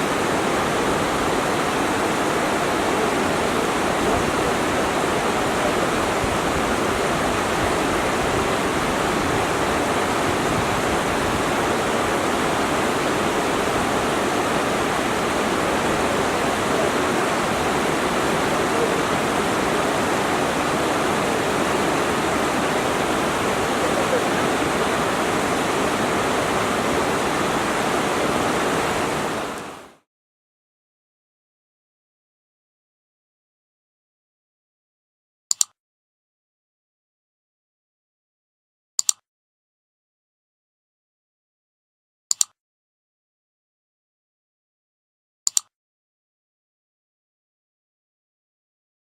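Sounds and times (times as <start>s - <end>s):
waterfall rushing: 0.0s - 30.0s.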